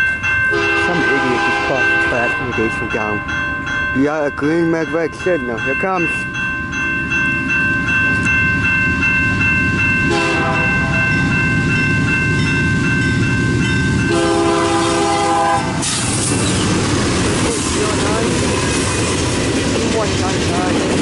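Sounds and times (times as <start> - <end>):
crossing bells ringing: 0.0 - 21.0
diesel locomotives rumbling: 0.0 - 21.0
train passing: 0.0 - 21.0
train air horn blasts: 0.5 - 2.3, 10.1 - 11.0, 14.1 - 15.9.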